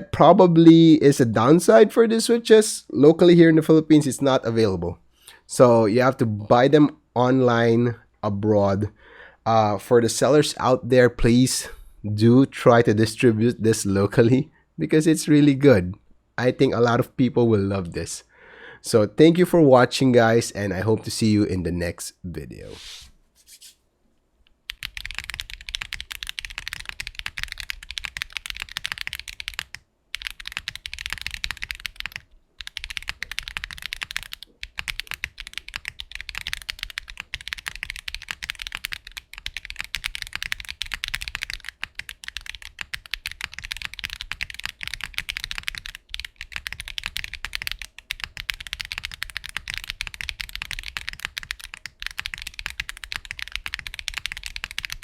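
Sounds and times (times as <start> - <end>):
mechanical keyboard typing: 24.7 - 55.0.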